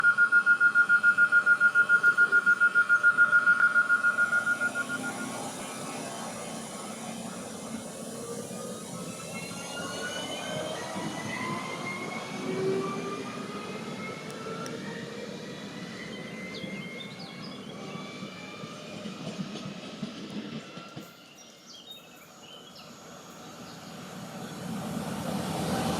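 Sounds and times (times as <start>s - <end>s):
rising whining tones: 0.0s - 19.4s
train running: 0.0s - 25.9s.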